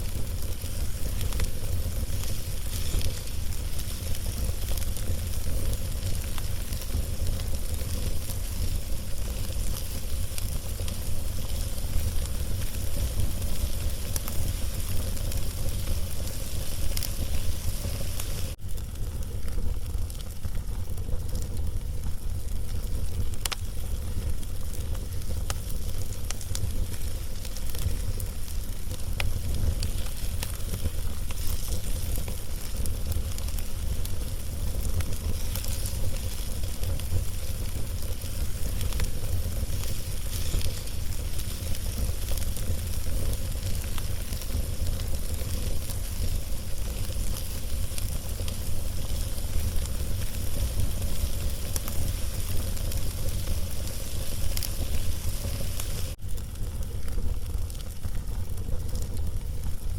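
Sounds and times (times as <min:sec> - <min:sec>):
log fire crackling and hissing: 0:00.0 - 0:59.9.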